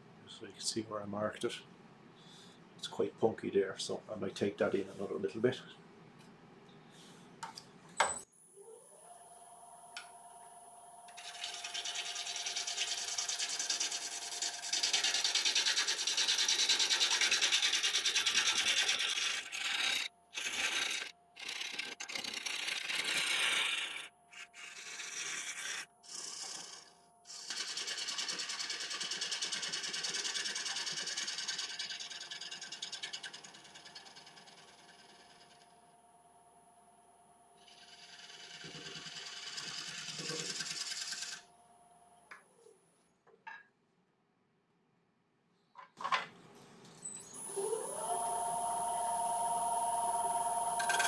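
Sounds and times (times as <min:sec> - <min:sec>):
turning tool cutting wood: 0:11.1 - 0:35.7, 0:37.6 - 0:41.5, 0:47.6 - 0:51.0
wood lathe motor whine: 0:24.7 - 0:35.8, 0:37.6 - 0:41.4, 0:47.2 - 0:51.0.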